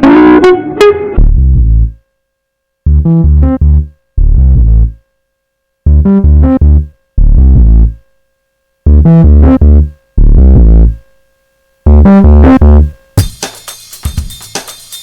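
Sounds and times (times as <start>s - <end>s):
distorted synthesizer bass riff: 0.0s - 2.0s, 2.8s - 5.0s, 5.8s - 8.0s, 8.8s - 11.0s, 11.9s - 13.2s
drum kit pattern: 12.5s - 15.0s.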